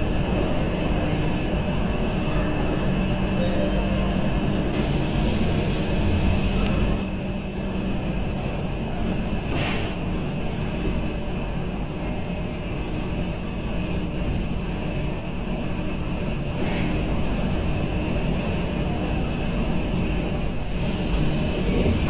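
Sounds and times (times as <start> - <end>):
faint low hum: 0.0 - 17.0
high-pitched pure tone climbing: 0.0 - 17.0
steady noisy background: 0.0 - 22.0.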